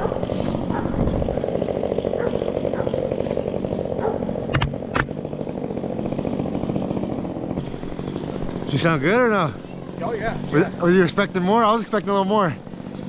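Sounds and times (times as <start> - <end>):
chainsaw engine running: 0.0 - 13.0
sharp engine pops: 4.5 - 5.2.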